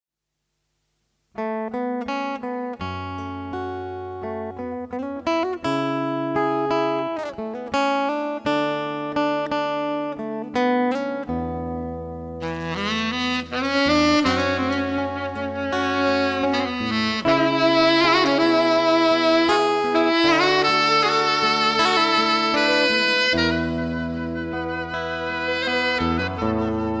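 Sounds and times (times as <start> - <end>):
guitar picking a melody: 1.3 - 27.0
held bass notes: 12.4 - 27.0
saxophone: 12.4 - 27.0.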